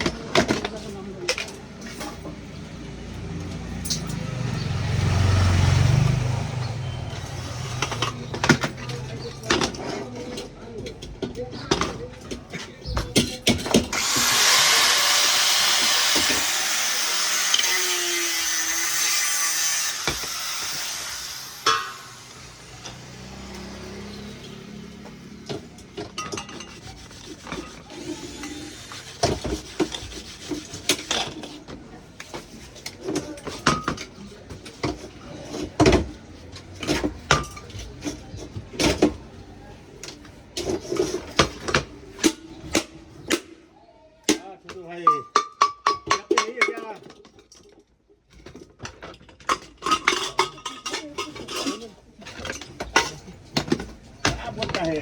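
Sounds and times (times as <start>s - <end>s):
loud rasping scraping: 13.9s - 23.8s, 26.6s - 31.0s.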